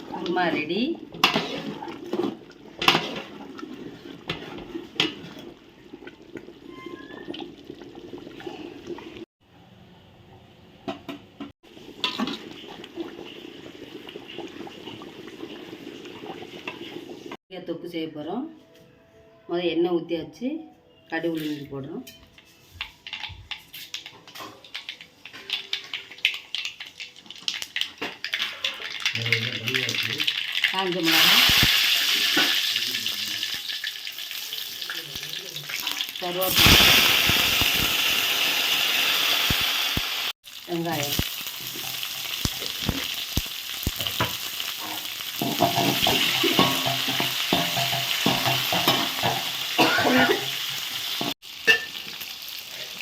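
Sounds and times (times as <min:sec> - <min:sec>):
liquid sloshing in a pot: 0:01.0 - 0:09.3
seeds spluttering in hot oil: 0:23.0 - 0:53.0.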